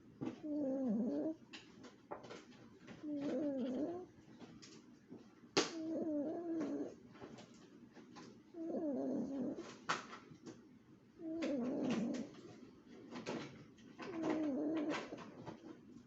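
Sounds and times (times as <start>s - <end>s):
small dog snoring: 0.2s - 1.4s, 3.0s - 4.1s, 5.7s - 7.0s, 8.5s - 9.8s, 11.2s - 12.4s, 14.0s - 15.7s.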